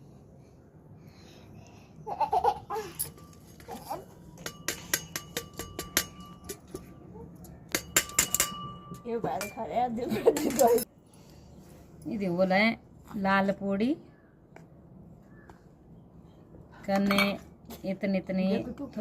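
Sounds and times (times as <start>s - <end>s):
metal utensil clinking: 3.0s - 10.9s.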